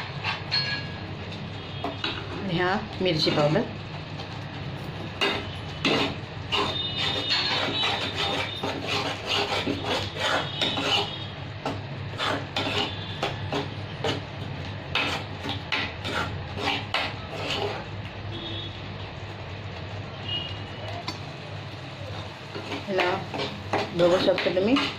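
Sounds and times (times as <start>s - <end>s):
spoon scraping thick paste in pan: 5.2s - 14.3s, 14.9s - 17.9s, 22.5s - 24.9s.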